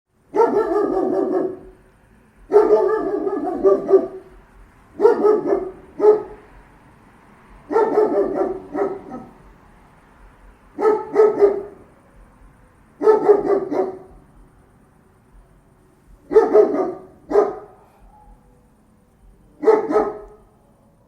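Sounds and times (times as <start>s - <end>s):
large dog barking deeply: 0.3s - 1.8s, 2.4s - 6.7s, 7.6s - 9.6s, 10.7s - 11.9s, 13.0s - 14.3s, 16.1s - 18.6s, 19.5s - 20.6s.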